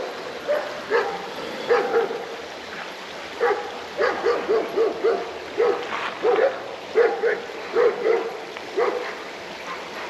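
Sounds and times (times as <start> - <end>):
dog barking angrily: 0.5 - 2.2, 3.4 - 9.2.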